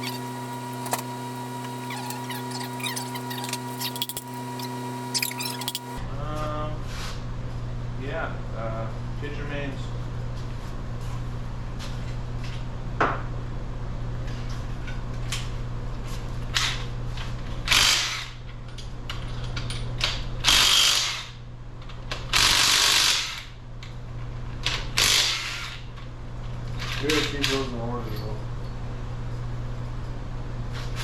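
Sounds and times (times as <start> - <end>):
low shop hum: 0.0 - 31.0
impact wrench bursts: 17.7 - 18.4, 20.4 - 21.4, 22.3 - 23.6, 24.8 - 25.8.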